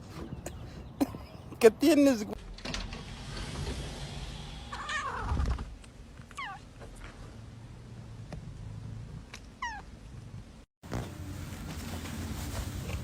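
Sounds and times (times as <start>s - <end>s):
cat meowing: 6.4s - 6.6s.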